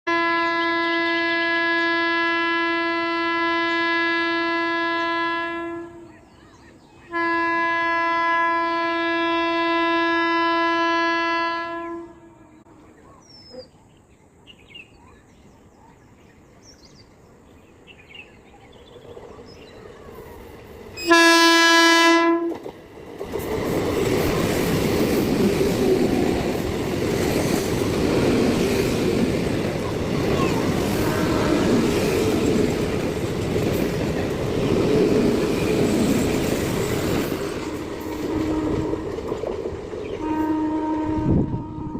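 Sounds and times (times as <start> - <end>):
train horn blasts: 0.1 - 6.2, 7.1 - 12.8, 21.0 - 22.6, 30.9 - 32.0, 37.9 - 39.2, 40.1 - 41.9
train wheels rattling on track: 18.1 - 41.9.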